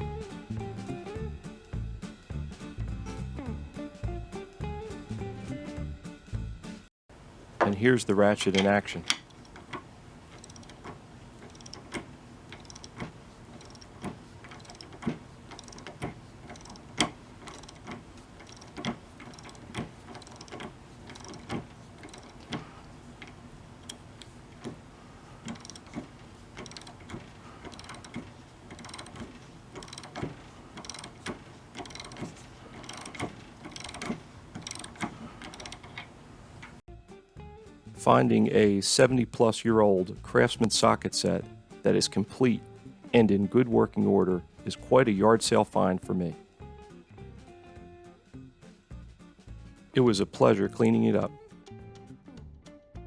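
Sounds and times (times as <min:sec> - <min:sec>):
ratchet clicking: 0:29.8 - 0:31.2, 0:31.8 - 0:35.9.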